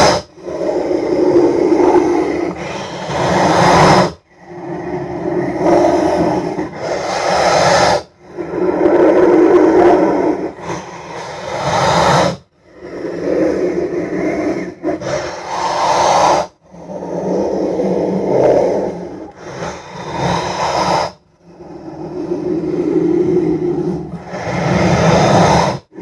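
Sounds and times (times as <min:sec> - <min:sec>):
harsh rasping growl-like noise: 0:00.0 - 0:26.0.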